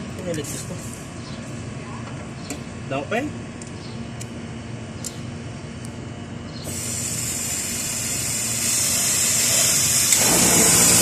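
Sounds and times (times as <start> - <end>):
pressurized gas hissing: 6.6 - 11.0.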